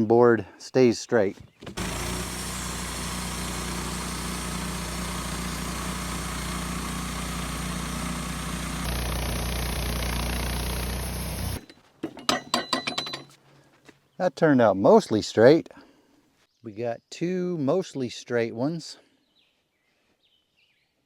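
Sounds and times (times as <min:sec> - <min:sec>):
band sawmill cutting wood: 0:01.6 - 0:11.7.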